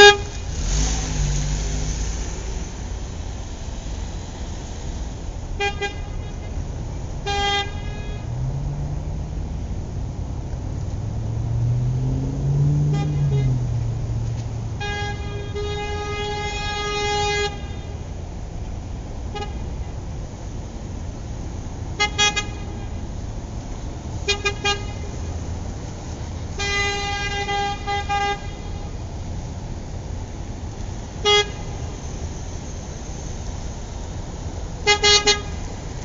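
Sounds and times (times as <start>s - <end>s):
car horn honking: 0.0s - 0.9s, 5.6s - 8.5s, 12.6s - 13.9s, 14.6s - 18.0s, 19.3s - 20.0s, 21.9s - 23.0s, 24.2s - 25.2s, 26.5s - 29.0s, 31.2s - 32.0s, 34.8s - 35.7s
street background noise: 0.0s - 36.0s.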